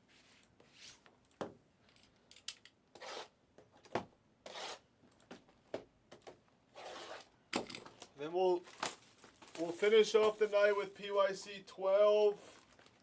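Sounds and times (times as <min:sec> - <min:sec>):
plastic wrapping scraping swishes: 0:08.6 - 0:11.1.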